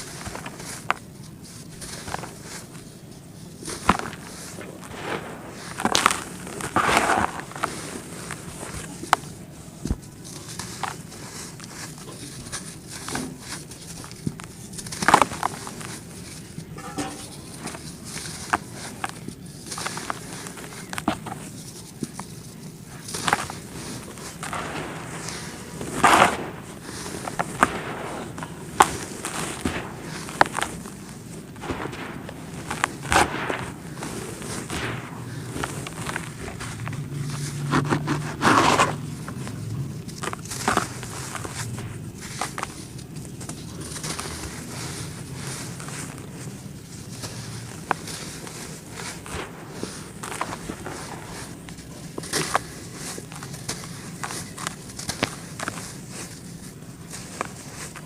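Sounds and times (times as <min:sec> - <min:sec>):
dirt lumps crunching: 0:00.0 - 0:58.0
sharp cracks: 0:03.6 - 0:09.1, 0:23.1 - 0:39.0.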